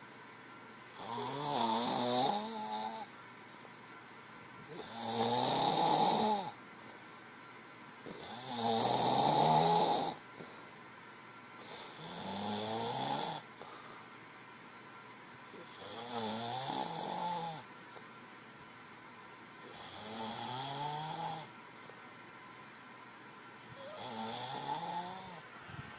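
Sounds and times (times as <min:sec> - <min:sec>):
man snoring loudly: 0:00.9 - 0:03.1, 0:04.7 - 0:06.6, 0:08.1 - 0:10.2, 0:11.6 - 0:13.5, 0:15.6 - 0:17.7, 0:19.7 - 0:21.5, 0:23.7 - 0:25.4.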